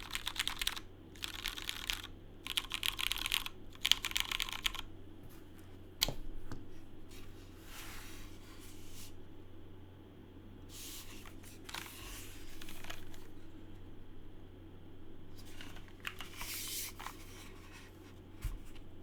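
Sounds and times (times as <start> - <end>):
typing on mechanical keyboard: 0.0 - 4.9
soft rubbing rustling noise: 7.0 - 9.3.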